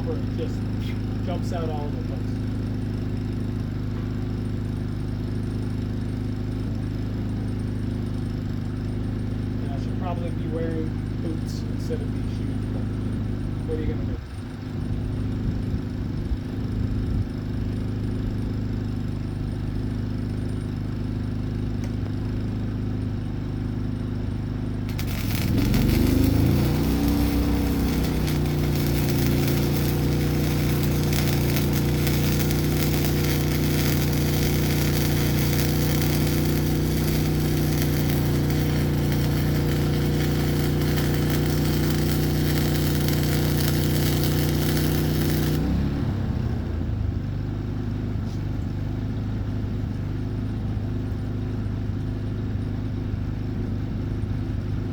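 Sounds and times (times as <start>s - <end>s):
generator engine running: 0.0s - 47.8s
welding arc crackling hiss: 24.9s - 46.0s.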